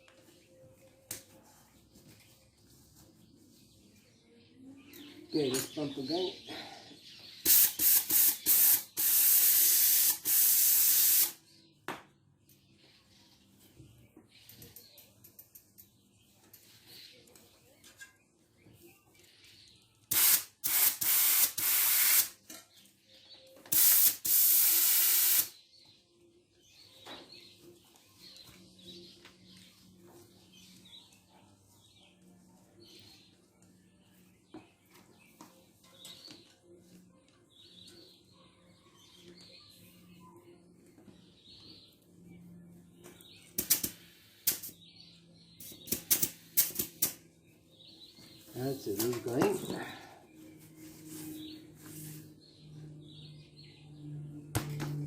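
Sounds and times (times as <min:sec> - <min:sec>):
hand pump air hissing: 0:07.5 - 0:11.4, 0:20.1 - 0:22.3, 0:23.7 - 0:25.5.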